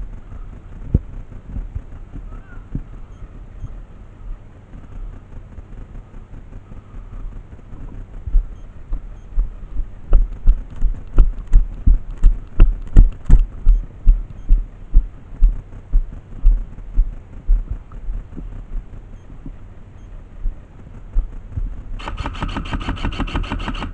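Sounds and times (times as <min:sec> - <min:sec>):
steady low rumble: 0:00.0 - 0:22.4
low even thuds: 0:07.8 - 0:19.6.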